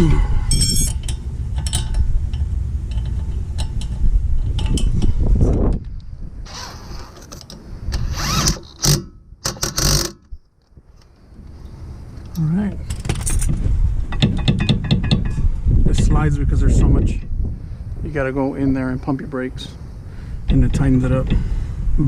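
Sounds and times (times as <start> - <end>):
low rumble: 0.0 - 7.1
metal tools working: 0.3 - 5.3
scraping handling noises: 6.5 - 13.7.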